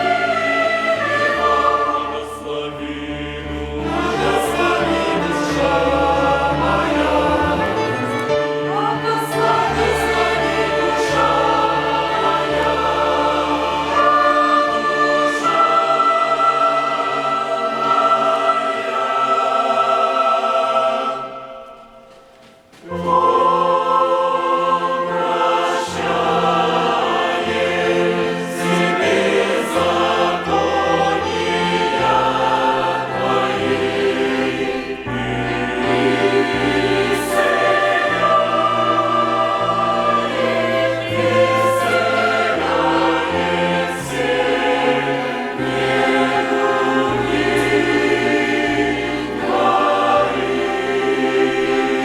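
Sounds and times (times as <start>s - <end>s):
choir singing a hymn: 0.0s - 52.0s
string orchestra: 0.0s - 52.0s.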